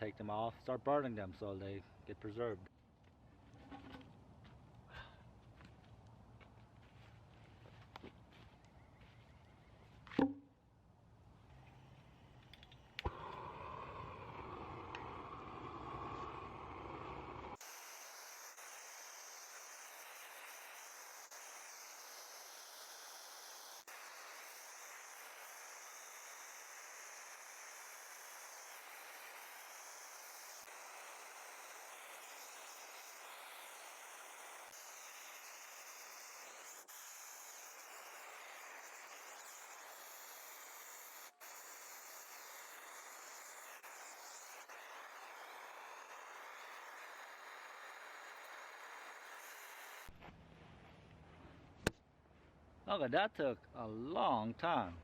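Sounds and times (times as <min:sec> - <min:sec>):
torch flame hissing: 0:13.0 - 0:50.2.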